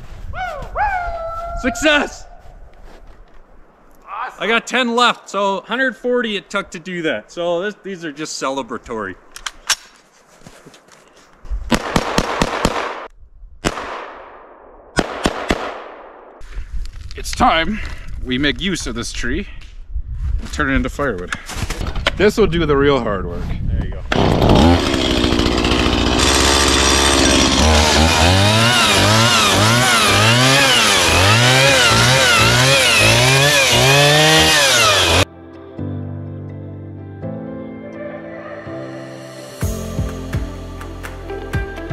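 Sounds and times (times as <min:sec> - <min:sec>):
rifle gunshots with echo: 0:11.7 - 0:16.3
chainsaw cutting wood: 0:24.1 - 0:35.2.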